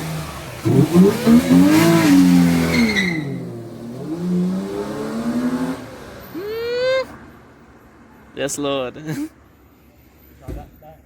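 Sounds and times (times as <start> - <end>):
car engine revving: 0.0 - 6.6.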